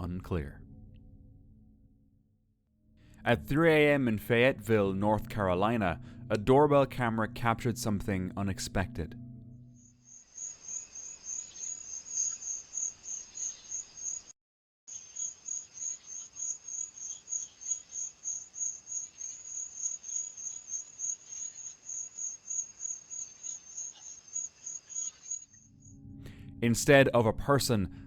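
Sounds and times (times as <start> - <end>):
insects chirping: 9.6 - 26.0.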